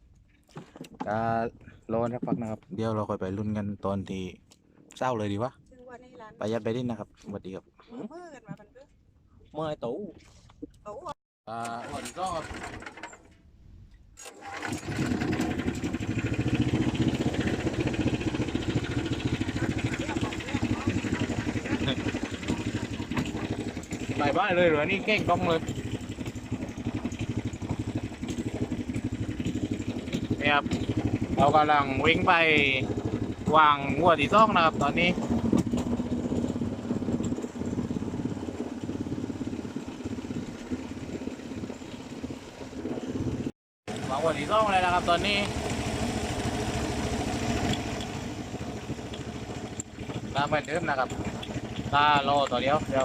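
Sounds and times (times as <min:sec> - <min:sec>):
boat engine running: 0:11.7 - 0:13.3, 0:14.3 - 0:53.0.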